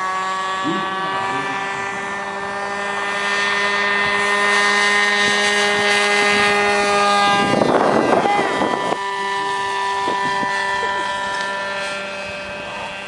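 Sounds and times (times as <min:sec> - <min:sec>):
model airplane engine whine: 0:00.0 - 0:13.0
wind noise: 0:00.8 - 0:11.1.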